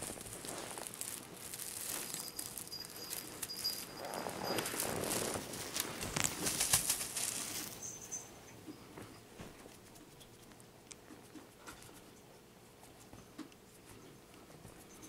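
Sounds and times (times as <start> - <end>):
kitten pattering about: 0.0 - 8.1.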